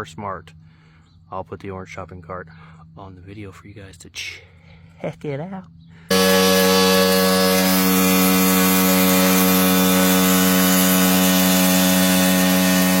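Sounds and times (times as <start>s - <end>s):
pressure washer engine running: 6.1s - 13.0s.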